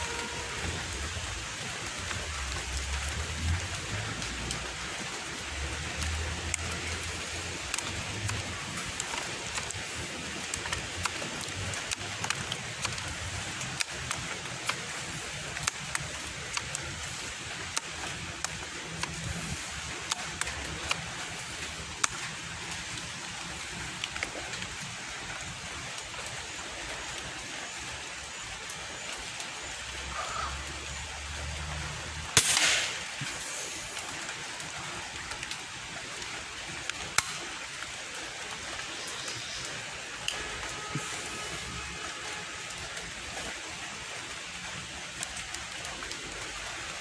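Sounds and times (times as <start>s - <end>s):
steady hiss: 3.2s - 46.8s
air rifle shot: 32.4s - 33.0s.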